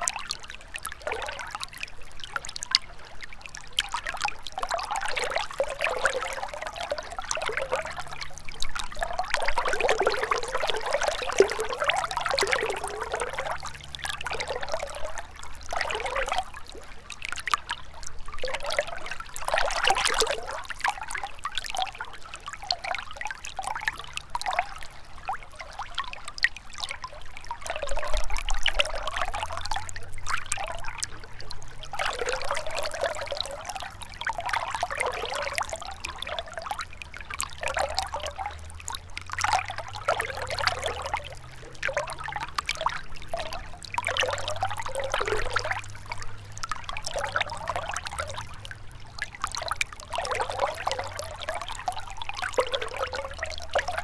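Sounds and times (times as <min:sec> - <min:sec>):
faint low rumble: 0:00.0 - 0:54.0
river trickling and splashing: 0:00.0 - 0:54.0.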